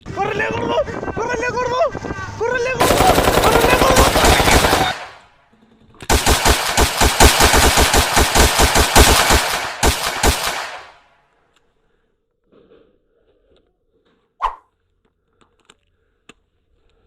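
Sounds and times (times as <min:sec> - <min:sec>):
rapid automatic gunfire: 0:02.8 - 0:05.2, 0:06.1 - 0:11.0.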